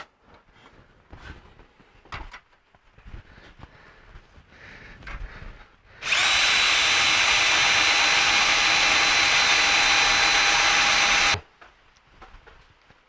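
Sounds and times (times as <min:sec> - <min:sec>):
power drill drilling: 0:06.0 - 0:11.4.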